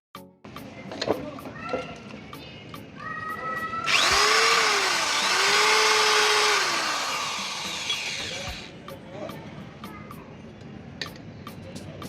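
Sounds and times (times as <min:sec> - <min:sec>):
mixer grinder motor running: 0:03.9 - 0:08.7.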